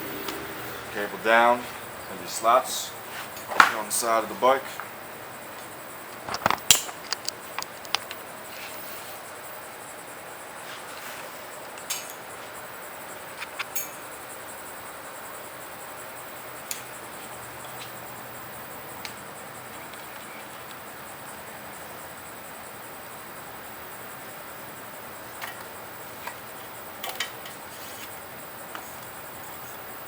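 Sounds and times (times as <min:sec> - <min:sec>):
steady background hiss: 0:00.0 - 0:30.0
bicycle cable clicks and taps: 0:06.1 - 0:08.2.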